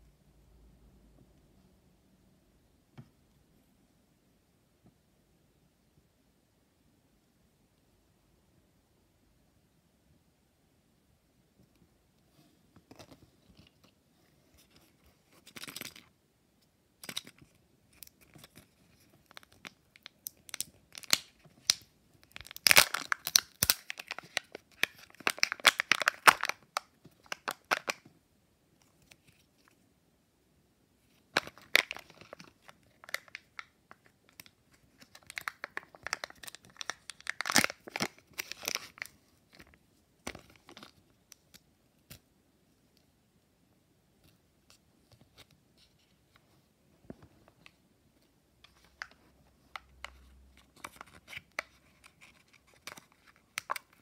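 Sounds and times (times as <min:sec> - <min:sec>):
plastic wrappers crinkling: 0:17.0 - 0:28.0, 0:31.4 - 0:39.7, 0:48.6 - 0:54.0.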